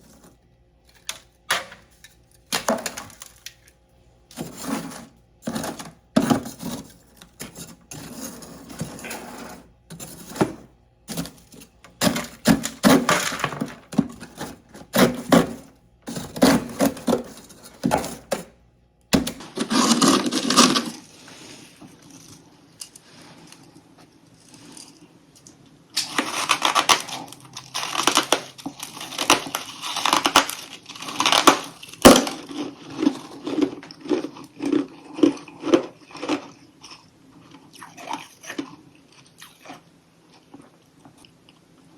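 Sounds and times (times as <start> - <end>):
crunchy frost chewing: 19.4 - 41.6.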